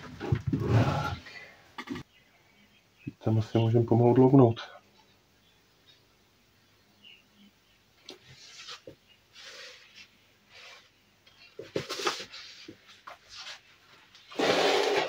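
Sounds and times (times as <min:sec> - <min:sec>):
rubbing and scraping: 0:00.0 - 0:01.2.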